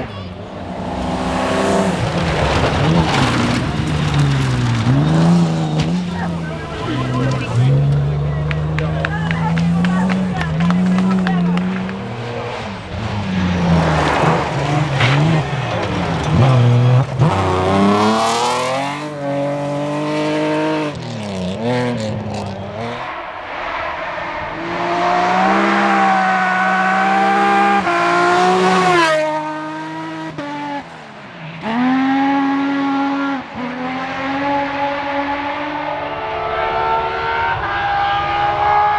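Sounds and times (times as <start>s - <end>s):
rally car engine at full throttle: 0.0s - 38.9s.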